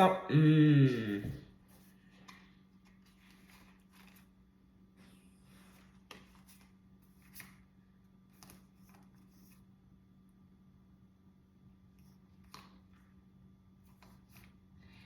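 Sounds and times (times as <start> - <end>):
cards shuffling: 1.2 - 4.4.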